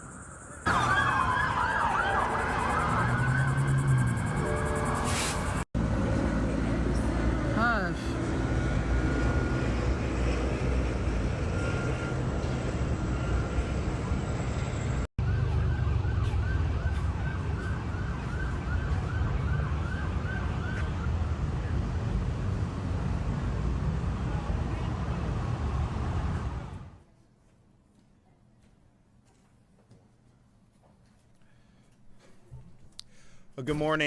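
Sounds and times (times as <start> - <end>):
siren yelping: 0.0 - 5.6, 15.2 - 21.2.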